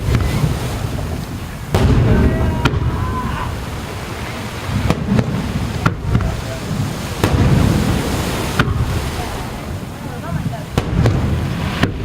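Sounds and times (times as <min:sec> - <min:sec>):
fireworks sharp cracks: 0:00.0 - 0:12.0
low rumble of fireworks booms: 0:00.0 - 0:12.0.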